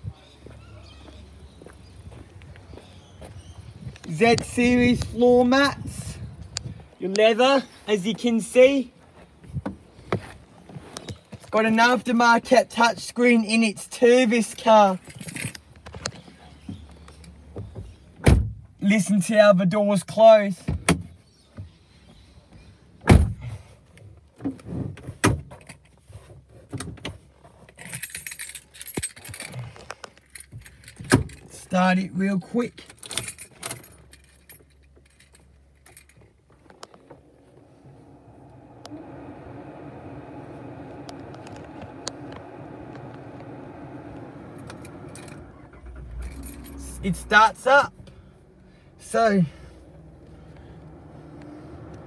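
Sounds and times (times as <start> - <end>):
keys jangling: 14.5 - 15.8, 27.7 - 31.7, 32.8 - 36.4, 44.6 - 45.4, 46.1 - 47.2
car door shutting: 17.6 - 18.6, 23.0 - 23.5, 37.0 - 46.8
ignition clicks: 36.7 - 47.0.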